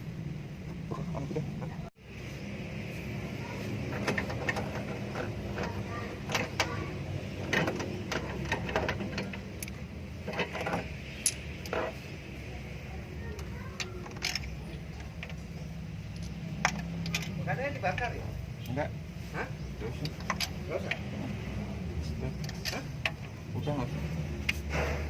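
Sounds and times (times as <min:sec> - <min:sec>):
engine running: 0:00.0 - 0:25.0
hand tools clinking on metal: 0:03.8 - 0:12.0, 0:13.4 - 0:21.2, 0:22.0 - 0:23.6.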